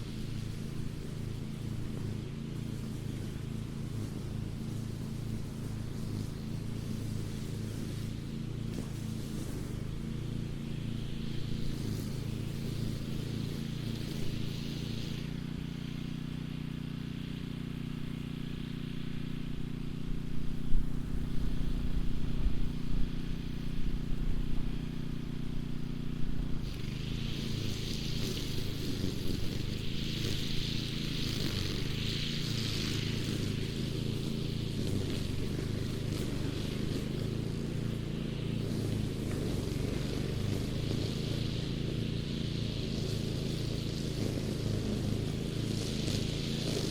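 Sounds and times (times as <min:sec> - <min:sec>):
lawn mower engine running: 0:00.0 - 0:46.9.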